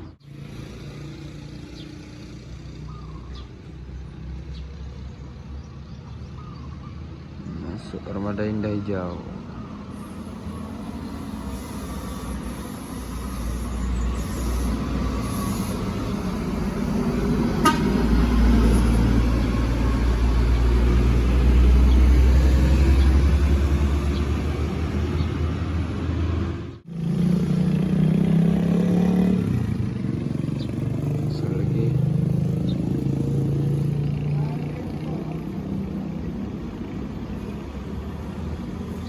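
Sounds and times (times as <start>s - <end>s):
bus diesel engine passing: 0.0s - 39.0s.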